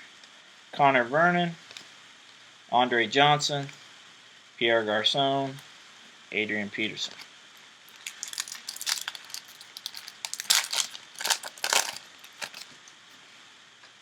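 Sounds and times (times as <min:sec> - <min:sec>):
foil wrapper tearing and crinkling: 0:07.9 - 0:12.8.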